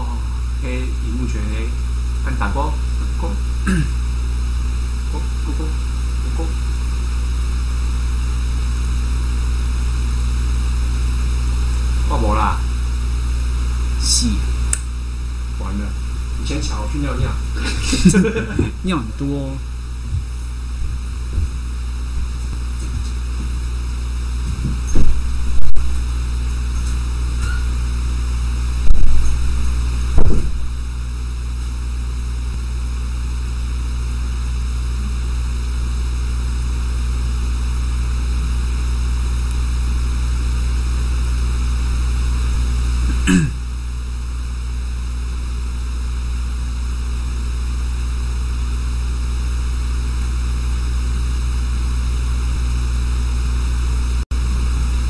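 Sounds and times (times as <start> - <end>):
low electrical hum: 0.0 - 55.0
sharp thumps: 28.8 - 30.8.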